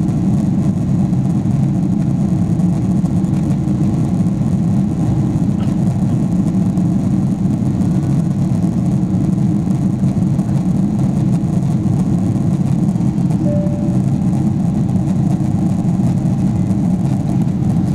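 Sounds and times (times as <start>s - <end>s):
jet engines droning: 9.0s - 17.9s.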